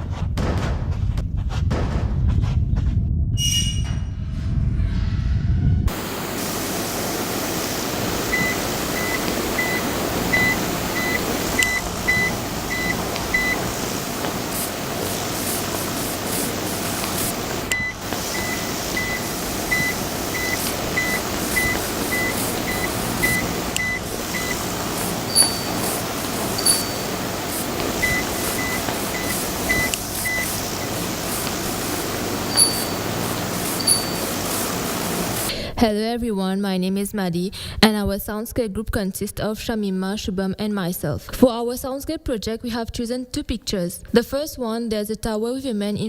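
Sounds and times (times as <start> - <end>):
reversing warning beeps: 8.3 - 13.8, 15.4 - 35.4.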